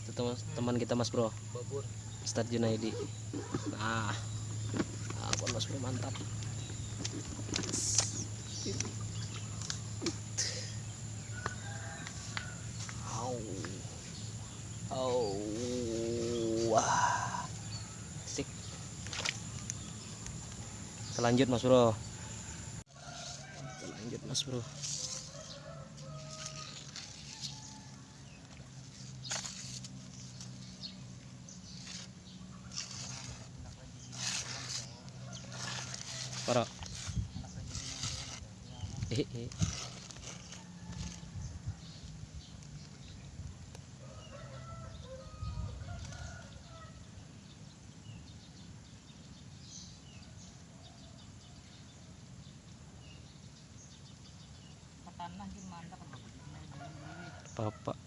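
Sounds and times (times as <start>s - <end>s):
faint rooster crowing: 11.2s - 14.2s, 15.0s - 18.5s, 22.1s - 28.6s, 40.2s - 42.1s, 44.0s - 47.2s, 56.4s - 58.0s.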